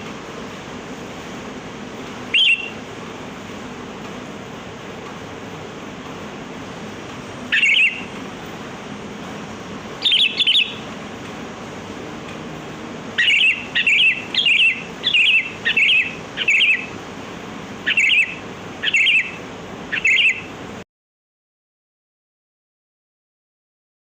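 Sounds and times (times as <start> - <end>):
bird calling in bubbly phrases: 2.3 - 2.9, 7.5 - 8.2, 10.0 - 10.9, 13.1 - 17.0, 17.8 - 20.6.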